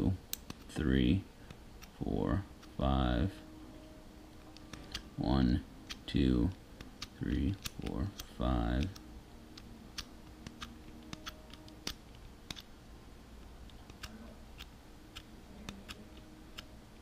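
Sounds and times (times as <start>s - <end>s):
padlock combination dials clicking: 7.0s - 12.7s.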